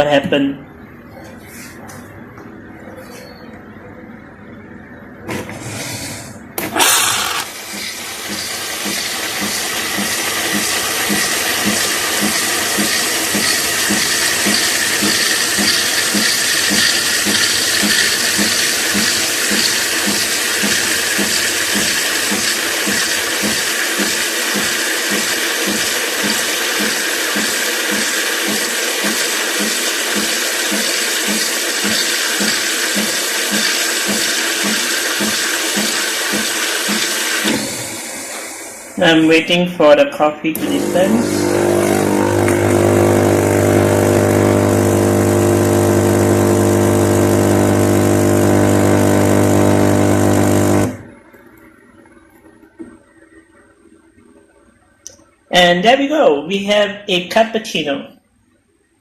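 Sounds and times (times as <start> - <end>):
coffee machine hissing and pulsing: 5.3 - 39.4, 40.5 - 51.1.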